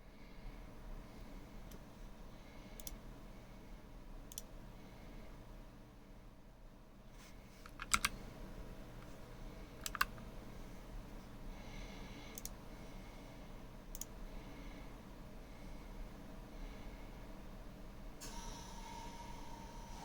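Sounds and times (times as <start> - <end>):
mechanical keyboard clicks: 7.7 - 8.2, 9.8 - 10.1.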